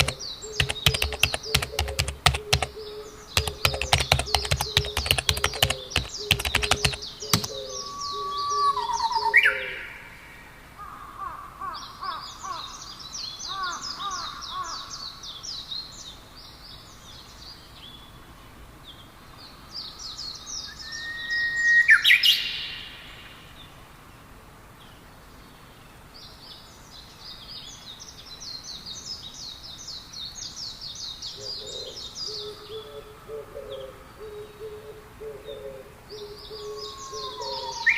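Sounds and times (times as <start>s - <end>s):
computer keyboard typing: 0.0s - 2.8s, 3.4s - 7.6s
songbirds chirping: 0.0s - 37.9s.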